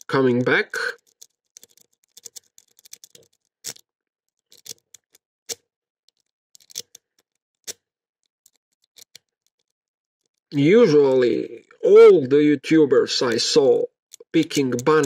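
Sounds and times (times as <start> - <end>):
lock picking metallic clicks: 1.0 - 10.4, 14.1 - 15.0.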